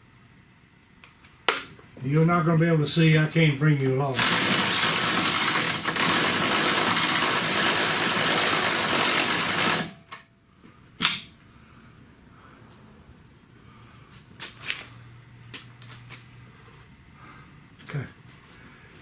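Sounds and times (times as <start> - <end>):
power tool running: 4.2 - 10.2
sharp click: 11.0 - 11.3.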